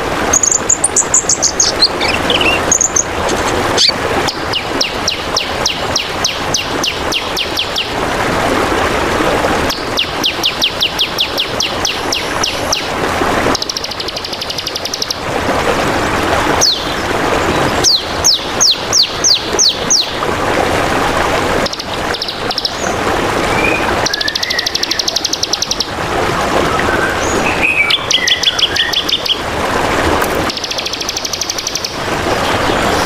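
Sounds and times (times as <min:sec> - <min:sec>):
songbirds calling: 0:00.0 - 0:07.9, 0:09.7 - 0:12.9, 0:16.6 - 0:20.2, 0:21.6 - 0:25.9, 0:26.7 - 0:29.4, 0:30.4 - 0:33.0
trickling water: 0:00.0 - 0:33.0
buzzy bird trills: 0:00.4 - 0:04.0.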